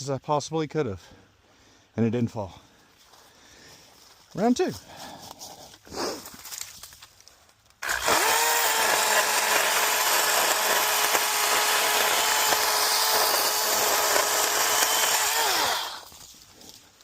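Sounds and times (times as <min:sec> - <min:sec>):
cordless power saw cutting wood: 0:07.8 - 0:16.1.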